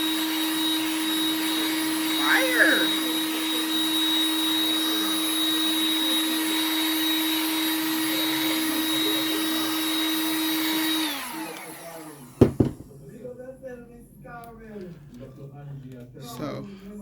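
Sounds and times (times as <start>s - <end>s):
heat gun blower whining: 0.0s - 12.9s.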